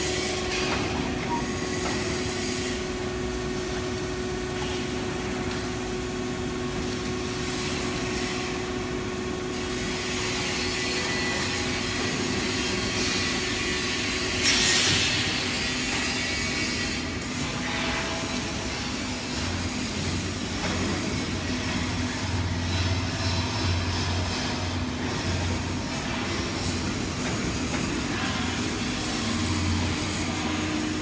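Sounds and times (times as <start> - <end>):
electric machinery humming: 0.0 - 14.4
short hiss: 5.5 - 6.0.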